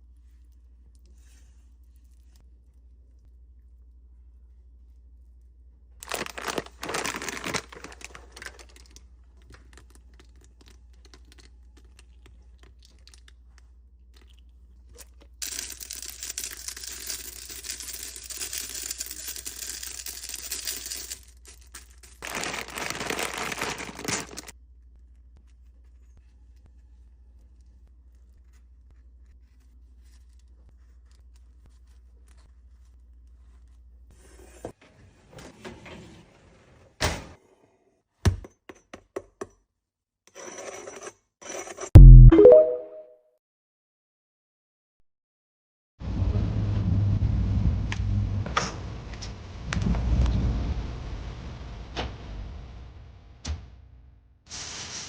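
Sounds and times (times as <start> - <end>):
low steady hum: 0.0 - 15.4
crinkling tearing noise: 6.0 - 13.5, 14.2 - 24.5.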